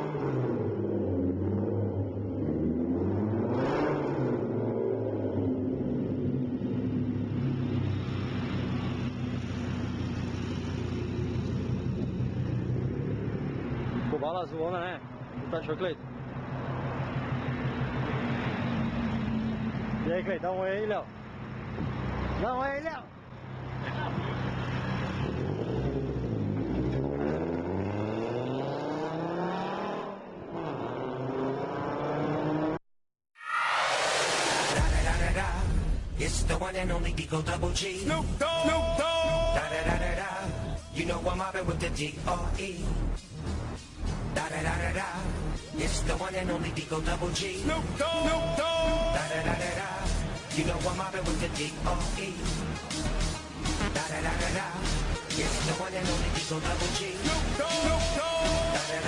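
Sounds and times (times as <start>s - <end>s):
car engine revving: 0.0s - 20.4s, 23.4s - 32.8s
car engine exhaust rumble: 5.3s - 14.0s.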